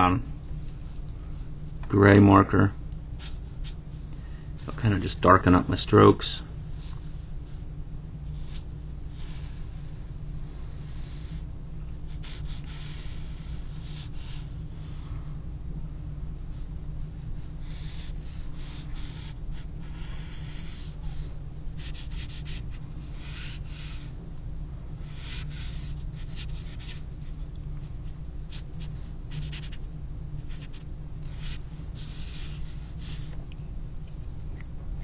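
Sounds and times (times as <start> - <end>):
steady low hum: 0.0 - 35.0
marker scratching on paper: 10.7 - 11.4, 12.1 - 15.0, 17.4 - 24.1, 25.0 - 29.8, 30.4 - 33.4.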